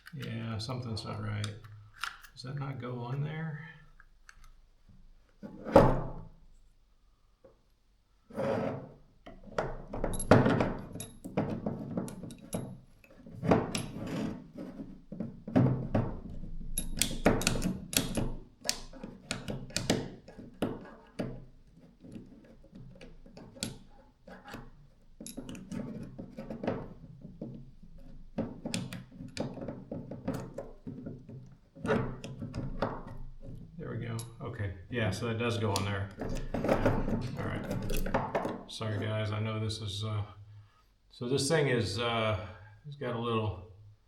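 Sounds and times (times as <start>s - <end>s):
small parts clicking and knocking: 16.4s - 20.8s, 35.7s - 38.6s.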